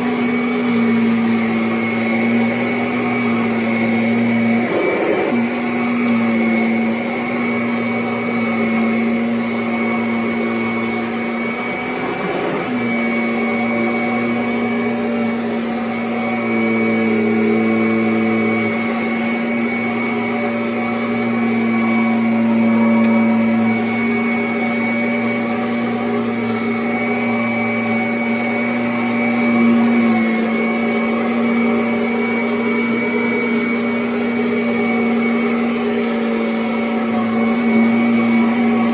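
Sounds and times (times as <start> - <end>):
vacuum cleaner running: 0.0 - 38.9.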